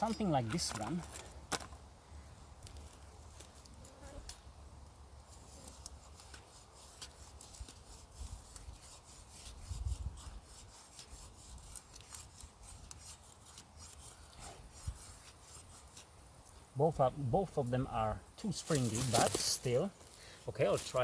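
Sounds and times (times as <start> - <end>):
machete scraping wood: 5.3 - 16.2, 18.7 - 20.2.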